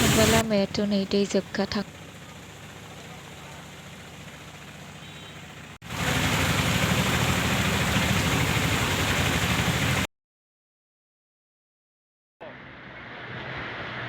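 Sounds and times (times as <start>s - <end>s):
vehicle engine running: 0.0s - 10.1s
rushing noise: 12.4s - 14.0s.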